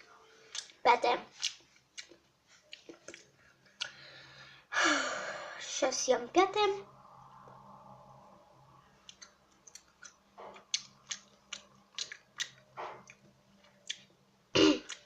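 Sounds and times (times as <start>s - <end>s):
person chewing wetly: 9.0s - 14.2s.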